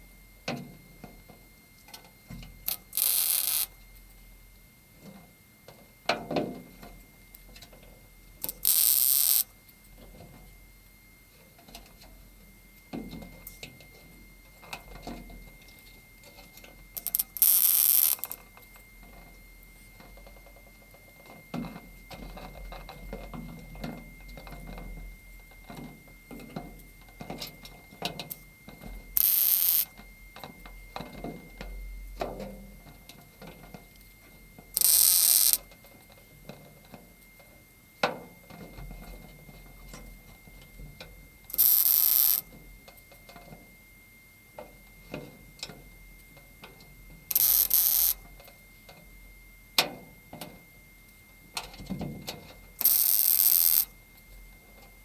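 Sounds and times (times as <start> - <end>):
welder hissing: 2.7 - 3.7, 8.4 - 9.4, 17.0 - 18.4, 29.2 - 29.9, 34.8 - 35.6, 41.5 - 42.4, 47.3 - 48.2, 52.8 - 53.8.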